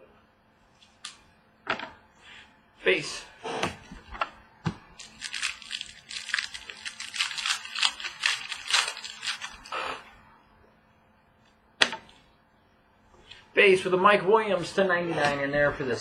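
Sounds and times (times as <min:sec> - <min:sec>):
card pack wrapper tearing and crinkling: 0:05.0 - 0:09.8.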